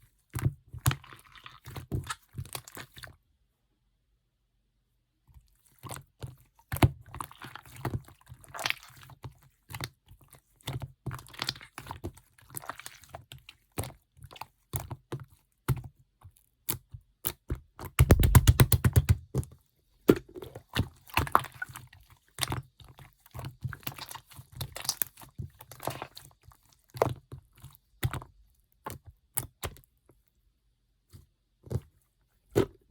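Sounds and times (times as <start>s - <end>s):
slime squished by hand: 17.9s - 19.3s
air bubble pops: 18.0s - 19.2s.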